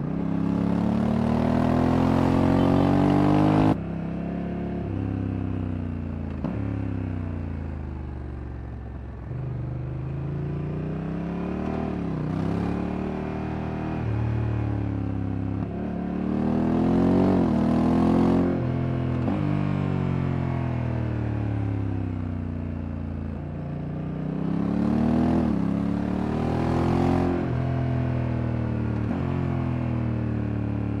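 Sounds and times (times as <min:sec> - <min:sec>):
motorcycle engine accelerating: 0:00.0 - 0:03.8, 0:05.9 - 0:22.0.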